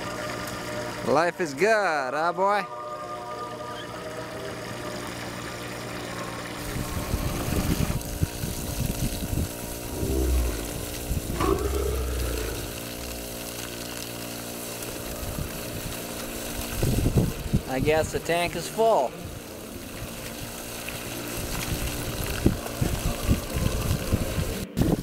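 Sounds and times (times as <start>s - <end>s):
water pump running: 4.9s - 23.1s.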